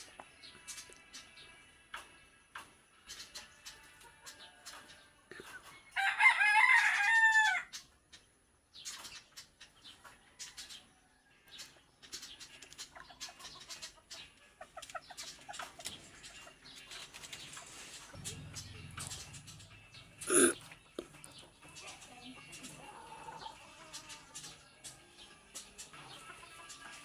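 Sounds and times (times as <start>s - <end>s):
chicken clucking: 0.6s - 6.1s, 7.0s - 27.0s
rooster crowing: 6.0s - 7.7s.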